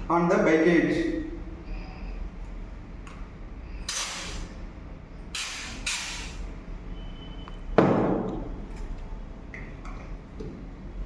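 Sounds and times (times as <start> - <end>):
aerosol spray bursts: 3.9 - 4.5, 5.4 - 6.4.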